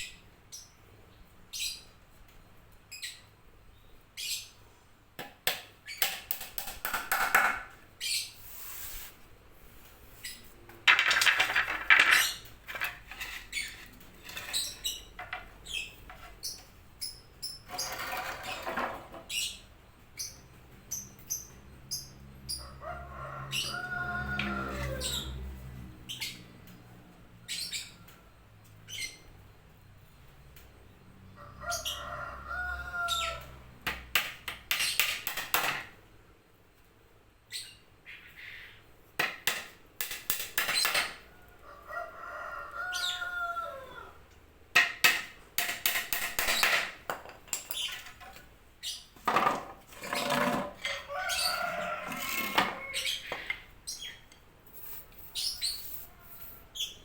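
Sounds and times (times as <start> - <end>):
small birds chirping: 12.2 - 18.0, 19.2 - 22.7, 52.8 - 57.0
rooster crowing: 22.6 - 25.4, 31.4 - 33.6, 41.5 - 44.2, 50.2 - 53.4.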